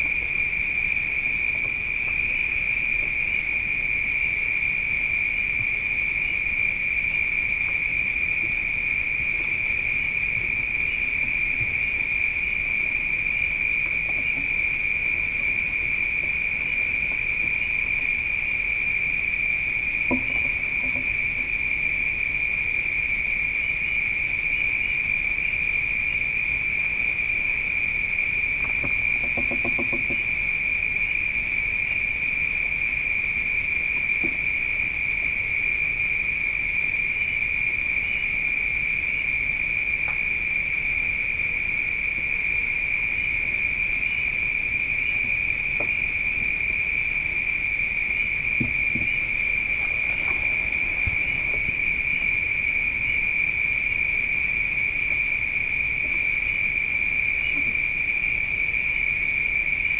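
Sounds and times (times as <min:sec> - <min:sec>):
crickets trilling: 0:00.0 - 0:59.9.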